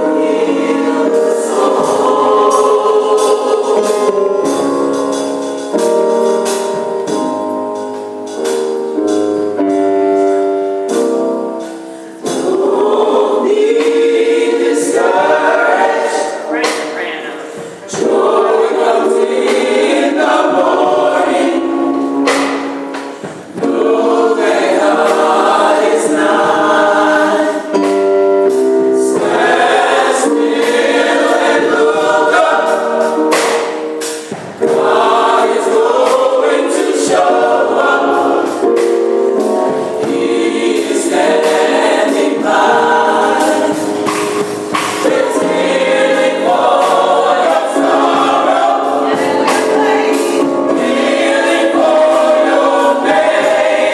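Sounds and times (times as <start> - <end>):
choir singing gospel: 0.0 - 53.9.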